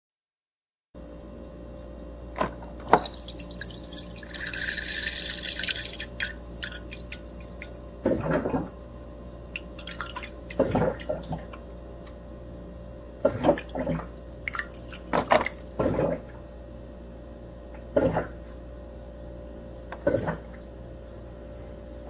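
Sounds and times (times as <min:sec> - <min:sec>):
steady low hum: 0:01.0 - 0:22.0
bottle gurgling: 0:02.8 - 0:08.9, 0:09.5 - 0:11.6
water pouring into cup: 0:02.9 - 0:07.8, 0:09.6 - 0:11.1.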